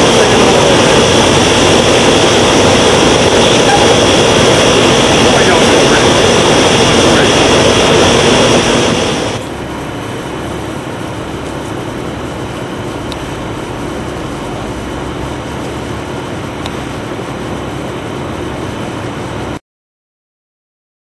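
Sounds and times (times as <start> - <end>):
engine running: 0.0 - 19.6.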